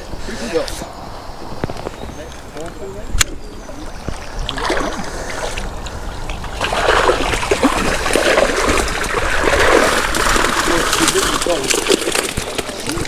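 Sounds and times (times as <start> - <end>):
water splashing and trickling: 3.4 - 13.0.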